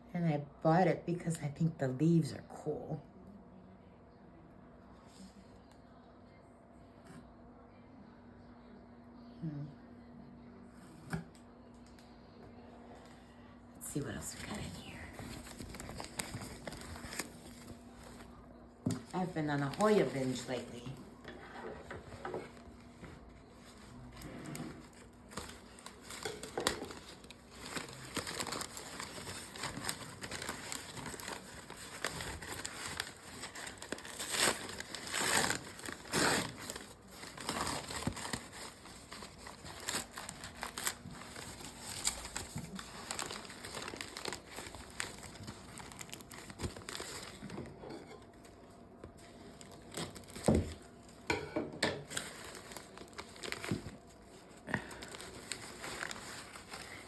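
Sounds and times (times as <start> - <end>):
packing material crinkling: 13.9 - 18.4, 19.0 - 51.2, 52.0 - 57.0.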